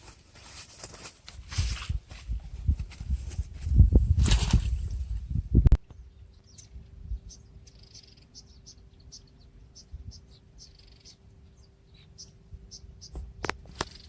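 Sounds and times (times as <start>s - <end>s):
small birds chirping: 4.9s - 14.0s.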